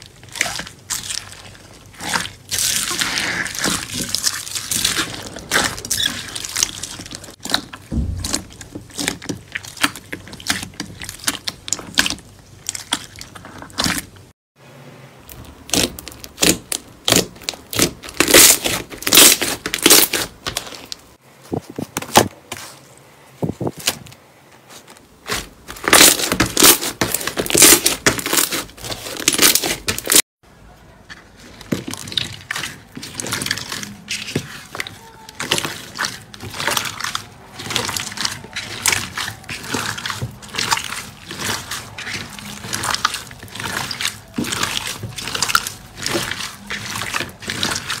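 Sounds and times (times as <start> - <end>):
slime crackling and popping: 15.3 - 21.0, 25.3 - 30.2, 35.4 - 48.0.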